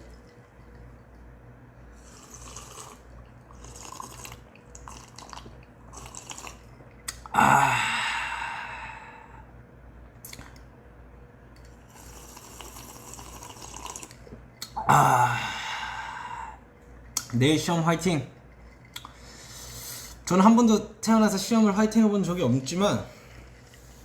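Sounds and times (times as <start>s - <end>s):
person slurping a drink: 1.9s - 7.3s, 11.9s - 14.9s
person exhaling ahh: 7.2s - 9.5s, 14.8s - 16.6s.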